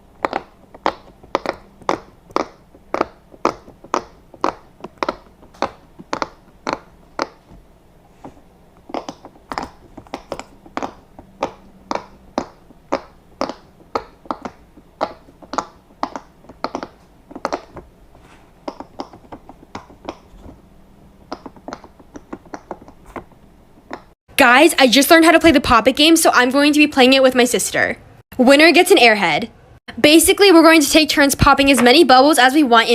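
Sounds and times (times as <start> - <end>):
fidget toy bubbles popping: 0.1 - 18.0, 18.6 - 20.6, 21.2 - 24.1.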